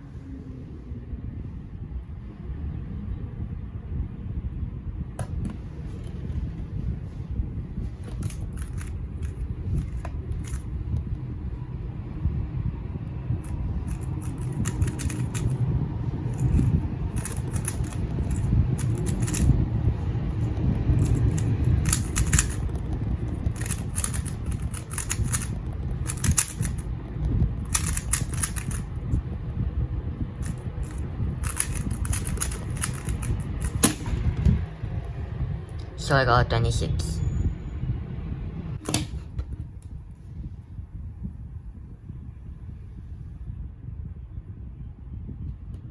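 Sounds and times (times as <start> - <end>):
low rumble of handling: 0.0 - 36.0, 37.2 - 45.9
puzzle cube clicking while turned: 8.1 - 10.8, 13.4 - 15.6, 16.2 - 19.7, 20.3 - 26.9, 27.6 - 29.0, 30.4 - 34.1.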